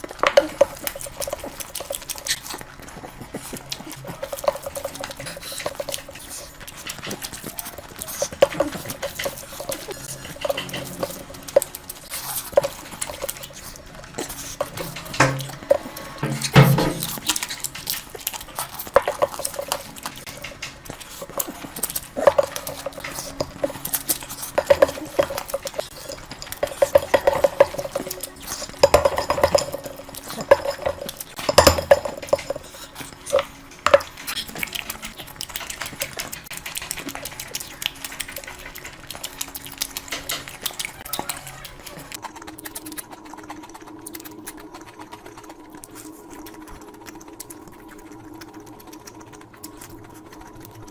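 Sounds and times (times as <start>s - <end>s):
chewing and wet squishing: 0.0s - 50.9s
clinks against a plate: 14.6s - 17.6s, 22.2s - 32.6s.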